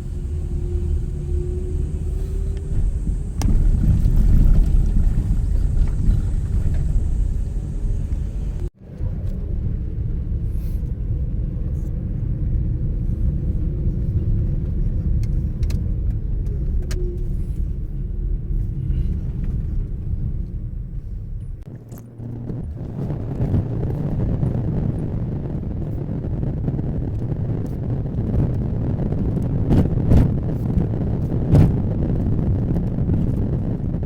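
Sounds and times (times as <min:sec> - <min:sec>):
car engine and road rumble: 0:00.0 - 0:34.0.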